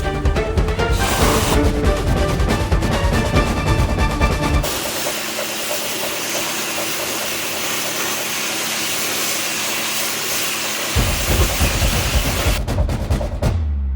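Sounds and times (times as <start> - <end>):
music drum beats: 0.0 - 5.2, 11.0 - 13.9
pressure washer spraying water: 0.8 - 12.6.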